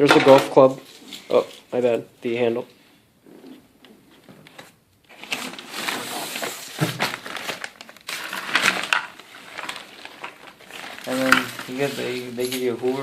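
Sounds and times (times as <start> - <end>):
packaging crinkling and rustling: 4.4 - 13.0.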